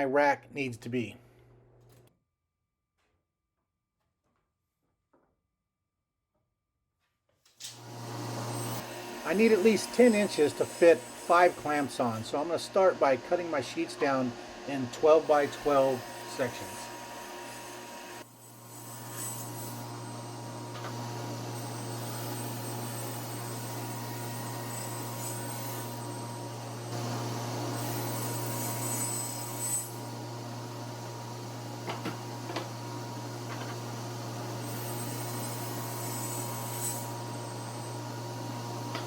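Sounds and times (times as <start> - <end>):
power saw motor humming: 7.7 - 18.6, 19.8 - 39.0.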